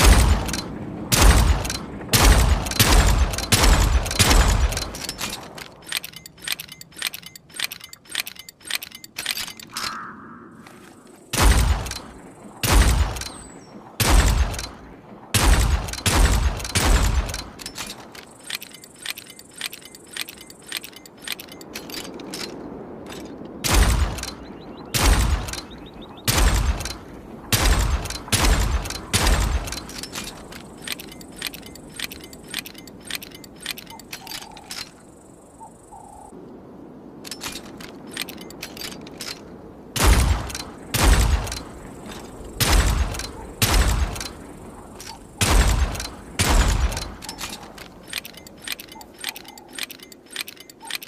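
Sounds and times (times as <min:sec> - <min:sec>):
revolver gunshots: 0:00.0 - 0:05.0, 0:11.3 - 0:17.6, 0:23.6 - 0:30.0, 0:40.0 - 0:41.7, 0:42.6 - 0:44.5, 0:45.2 - 0:47.6.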